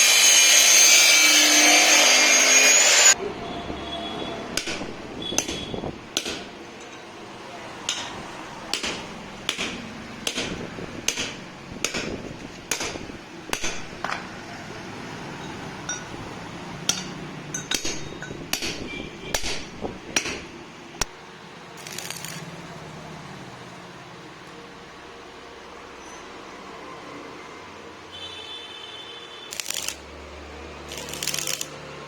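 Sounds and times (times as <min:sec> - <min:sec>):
hammer striking steel: 0:04.5 - 0:07.1, 0:07.8 - 0:14.3, 0:15.4 - 0:16.2, 0:16.9 - 0:20.6.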